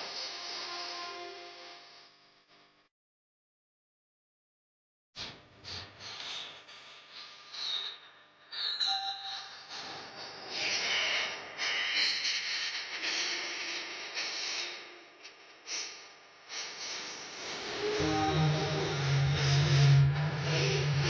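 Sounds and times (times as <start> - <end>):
hiss-like noise: 15.6 - 20.8
bass-heavy music: 17.4 - 21.0.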